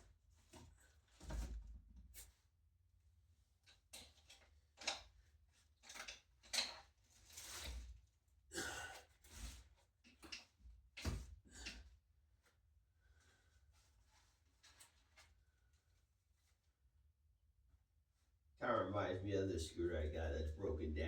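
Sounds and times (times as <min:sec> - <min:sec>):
handling scrapes and rustles: 0:05.9 - 0:08.0.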